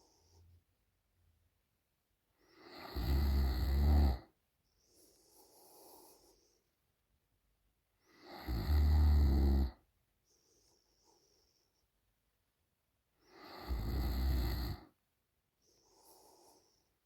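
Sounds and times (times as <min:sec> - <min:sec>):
soft breath: 0:00.0 - 0:00.7, 0:04.6 - 0:07.0, 0:10.2 - 0:12.2, 0:15.5 - 0:17.0
woman snoring: 0:02.6 - 0:04.3, 0:08.1 - 0:09.8, 0:13.3 - 0:14.9.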